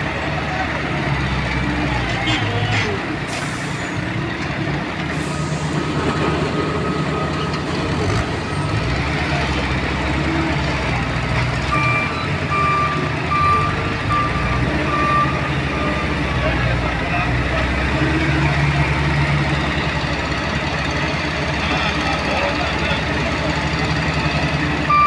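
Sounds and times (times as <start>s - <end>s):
heavy vehicle engine running: 0.0s - 25.0s
reversing alarm beeping: 5.2s - 16.6s.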